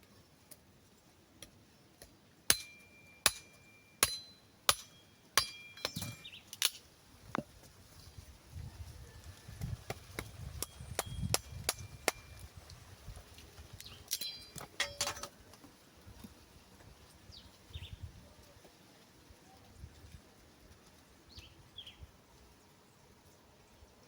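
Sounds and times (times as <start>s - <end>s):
thin sticks snapping: 6.5s - 6.8s.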